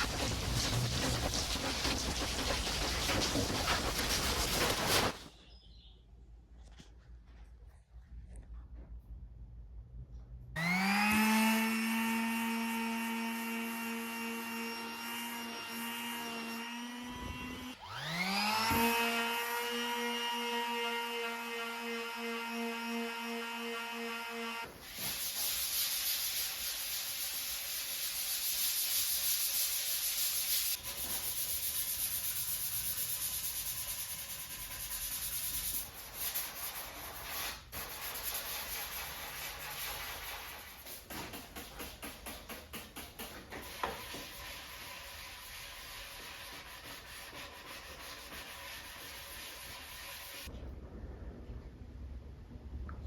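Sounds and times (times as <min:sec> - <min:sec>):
sandpaper rasping: 0:00.0 - 0:05.3, 0:24.8 - 0:50.5.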